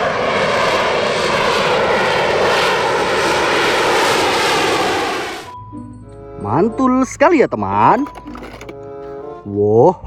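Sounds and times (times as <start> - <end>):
jet engine rush: 0.0 - 5.6.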